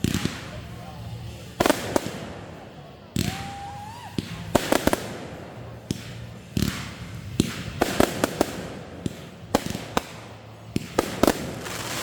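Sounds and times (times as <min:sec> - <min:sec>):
fireworks bangs: 0:00.0 - 0:12.0
fireworks crackle: 0:00.0 - 0:12.0.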